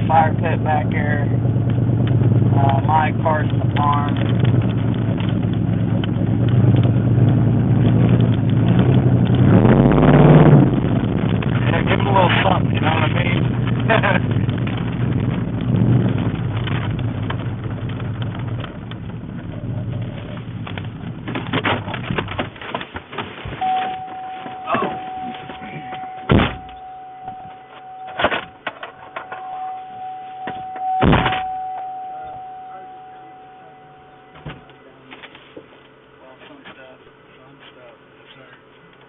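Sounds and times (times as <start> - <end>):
vehicle engine rumble: 0.0 - 39.0
car doors shutting: 21.2 - 33.1
high warning tone: 23.6 - 35.3.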